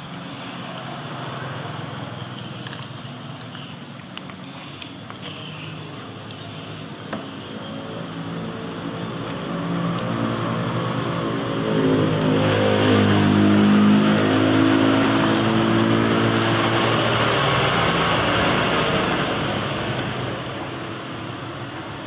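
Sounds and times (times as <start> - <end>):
vehicle engine passing by: 8.1 - 21.7.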